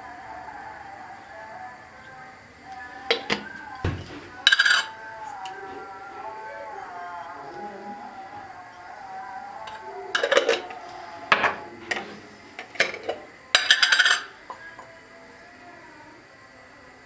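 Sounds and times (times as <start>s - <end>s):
dishes and utensils clattering: 3.1s - 5.0s, 10.1s - 14.7s.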